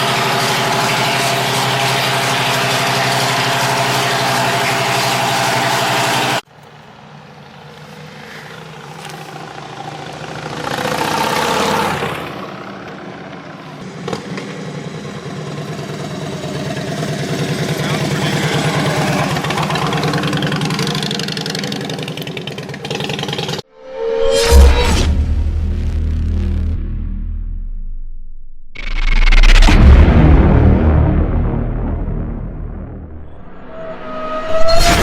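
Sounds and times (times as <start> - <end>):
motorcycle engine running: 7.4 - 23.6.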